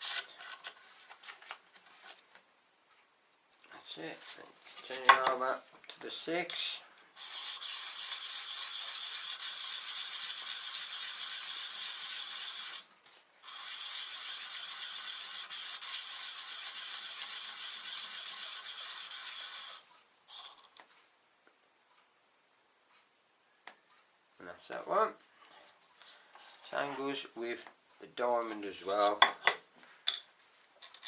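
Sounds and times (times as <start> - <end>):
cutter scraping on sharpening card: 0.0 - 0.8, 7.2 - 20.6.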